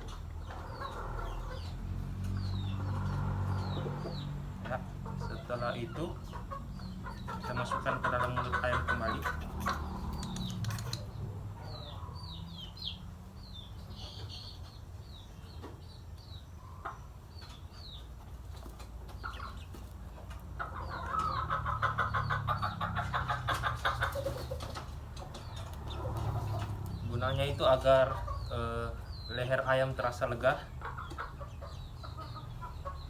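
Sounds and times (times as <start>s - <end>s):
small birds chirping: 0.0s - 33.0s.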